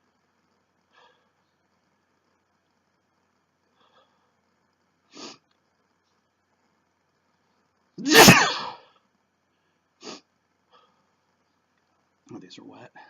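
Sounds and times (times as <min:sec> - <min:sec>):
man sneezing loudly: 0:08.0 - 0:08.8.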